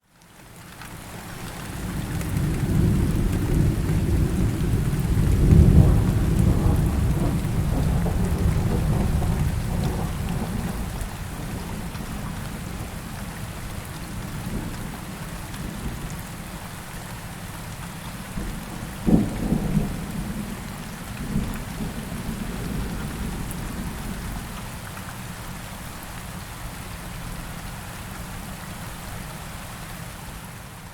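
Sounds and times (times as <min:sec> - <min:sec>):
steady rain hiss: 0:00.0 - 0:30.9
rolling thunder rumble: 0:01.8 - 0:16.1, 0:18.4 - 0:24.5
sharp thunderclap: 0:02.7 - 0:10.9, 0:19.0 - 0:20.6.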